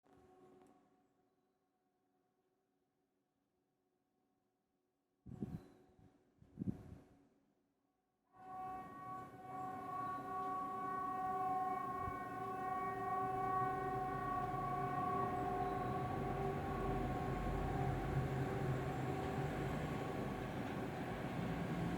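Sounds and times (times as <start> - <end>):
civil defence siren steady chord: 8.5 - 21.9.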